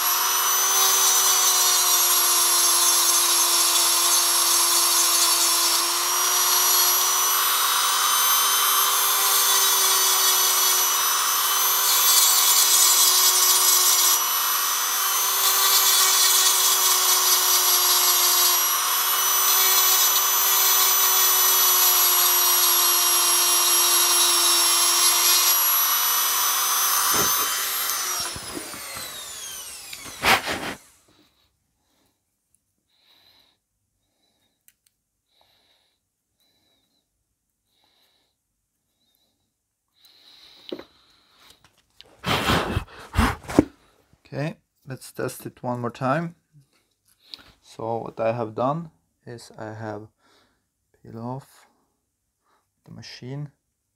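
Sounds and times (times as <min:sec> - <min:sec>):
handheld power tool whining: 0:00.0 - 0:31.3, 0:40.0 - 0:43.7.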